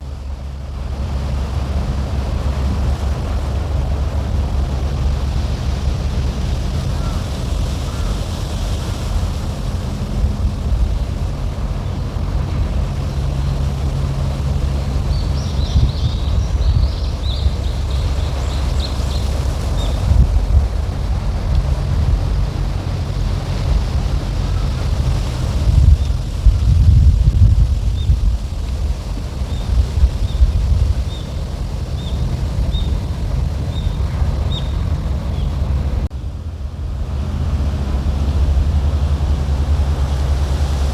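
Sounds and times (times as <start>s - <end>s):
low hum: 0.0s - 40.9s
wind buffeting microphone: 0.0s - 40.9s
bird chirping: 33.7s - 35.6s.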